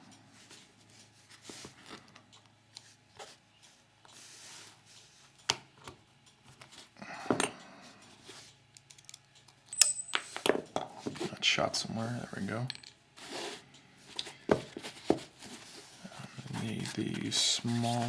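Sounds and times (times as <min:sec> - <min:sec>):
metallic ping of clip: 0:09.8 - 0:10.4.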